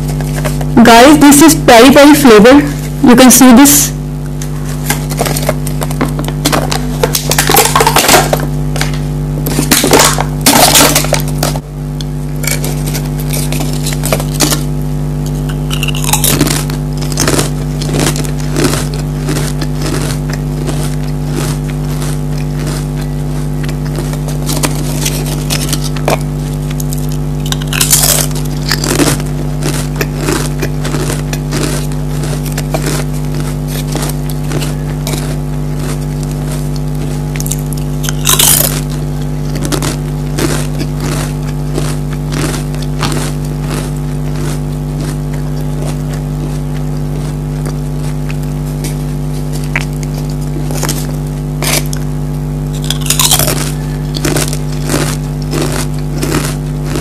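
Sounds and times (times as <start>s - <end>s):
crisps crunching: 0.0s - 3.0s, 4.2s - 57.0s
steady low hum: 0.0s - 57.0s.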